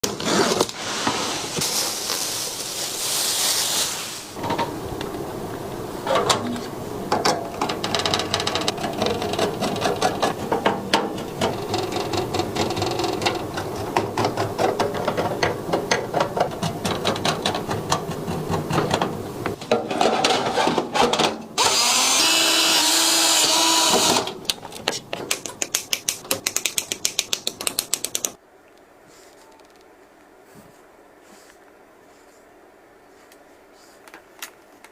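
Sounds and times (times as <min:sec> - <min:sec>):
electric screwdriver whirring: 0:21.6 - 0:24.3
loud high-pitched whir: 0:21.6 - 0:24.3
clicks and taps of components: 0:24.5 - 0:28.4.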